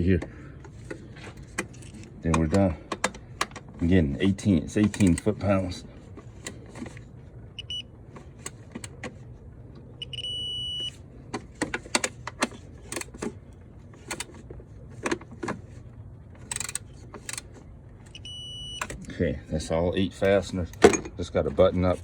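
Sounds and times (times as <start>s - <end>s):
wrench clicking against metal: 16.5s - 17.5s.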